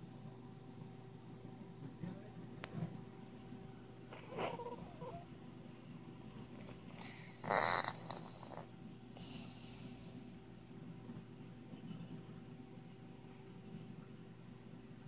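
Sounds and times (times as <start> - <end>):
cat snoring: 4.2 - 5.3, 6.9 - 10.6.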